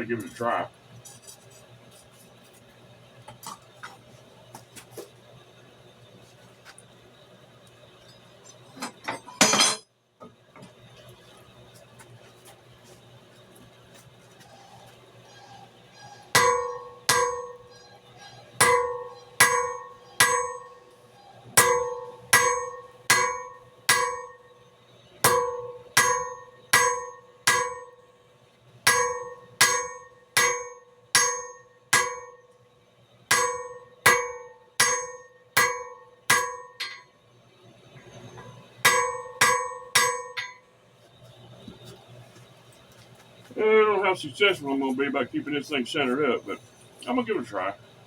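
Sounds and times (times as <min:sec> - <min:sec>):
hammer striking metal on anvil: 0:09.3 - 0:09.8, 0:16.3 - 0:17.8, 0:18.6 - 0:20.8, 0:21.6 - 0:24.4, 0:25.2 - 0:28.0, 0:28.9 - 0:32.4, 0:33.3 - 0:37.1, 0:38.4 - 0:40.6.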